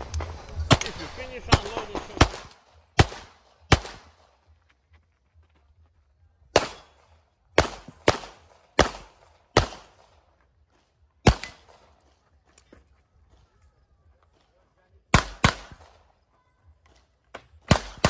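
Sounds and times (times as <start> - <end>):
handgun shots with echo: 0.7 - 4.1, 6.5 - 10.0, 11.2 - 11.8, 15.1 - 16.0, 17.4 - 18.0.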